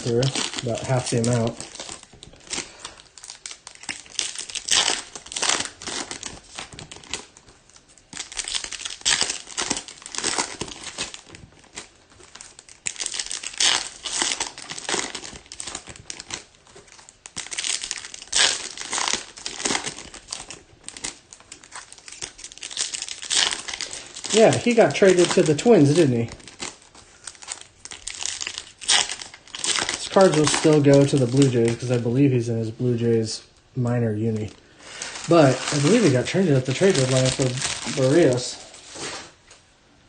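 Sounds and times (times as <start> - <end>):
foil wrappers crinkling and tearing: 0.0 - 33.0, 33.9 - 39.4.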